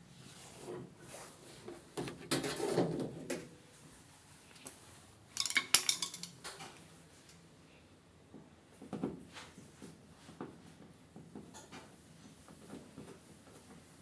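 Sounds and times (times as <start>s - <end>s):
metallic clinks and clatters: 5.4s - 6.4s.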